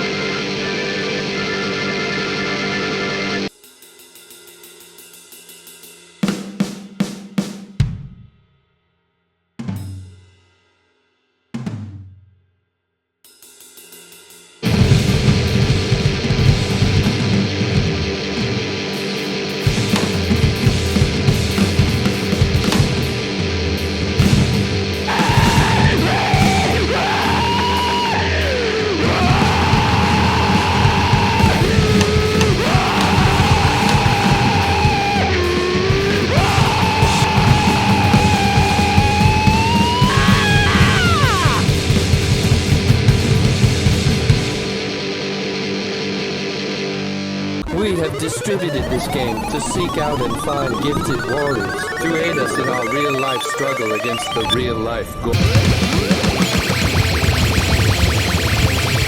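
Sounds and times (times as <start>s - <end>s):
distorted guitar chords: 0.0s - 3.5s, 14.6s - 54.6s, 55.2s - 59.0s
rapid drumming: 19.5s - 44.8s, 55.4s - 59.0s.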